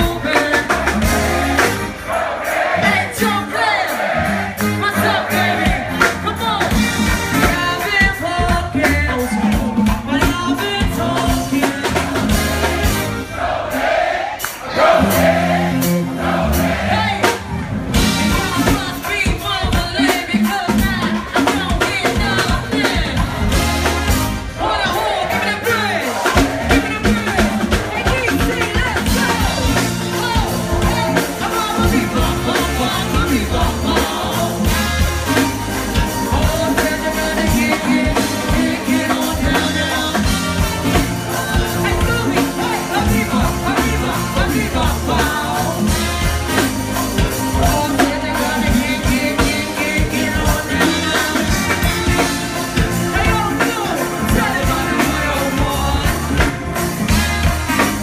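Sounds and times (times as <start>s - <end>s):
bass: 0.0s - 58.0s
live band playing: 0.0s - 58.0s
steady drum beat: 0.0s - 58.0s
person singing: 35.9s - 46.2s, 47.2s - 52.4s, 53.0s - 56.6s.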